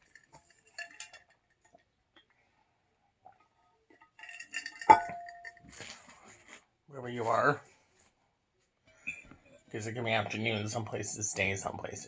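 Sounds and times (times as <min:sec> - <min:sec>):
sharp ringing clink: 0:04.7 - 0:05.6.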